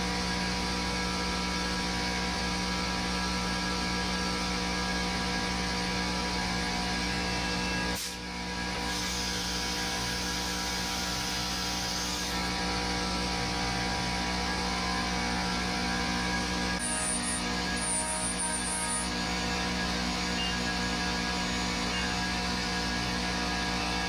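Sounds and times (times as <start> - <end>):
shop machinery humming: 8.8 - 24.0.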